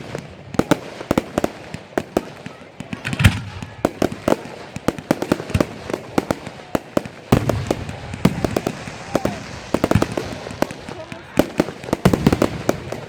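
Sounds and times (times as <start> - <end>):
fireworks bangs and pops: 0.0 - 13.0
heavy firework boom: 7.3 - 13.0.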